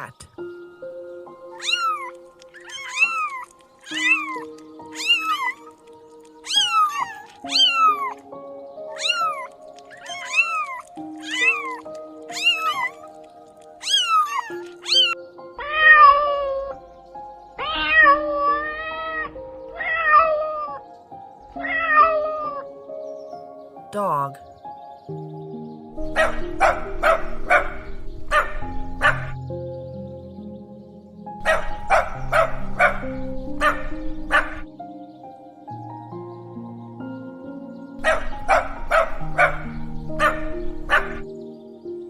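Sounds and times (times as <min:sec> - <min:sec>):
soft background music: 0:00.0 - 0:42.0
cat meowing: 0:01.5 - 0:08.2, 0:08.9 - 0:13.2, 0:13.8 - 0:16.8, 0:17.6 - 0:20.8, 0:21.5 - 0:22.7.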